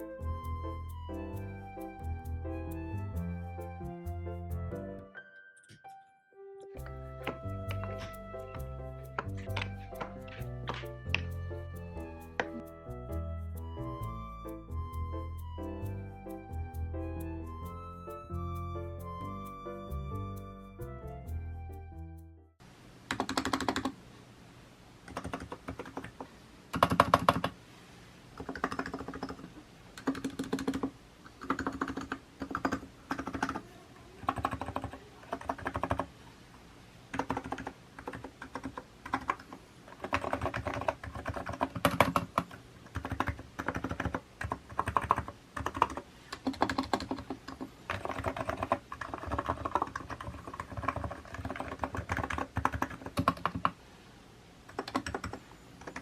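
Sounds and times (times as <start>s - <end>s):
keyboard typing: 6.8s - 13.8s, 23.1s - 24.0s, 25.1s - 27.6s, 28.4s - 36.1s, 37.1s - 53.8s, 54.7s - 56.0s.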